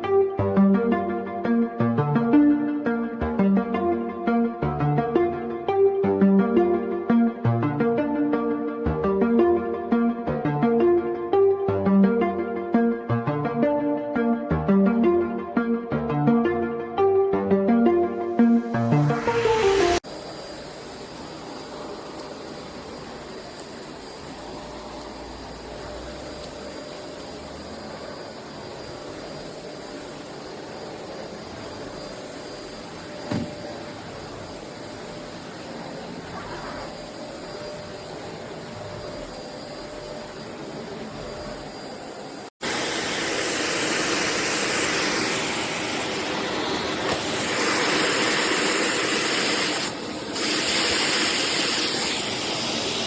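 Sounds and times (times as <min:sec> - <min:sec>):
vacuum cleaner running: 0:17.7 - 0:53.0.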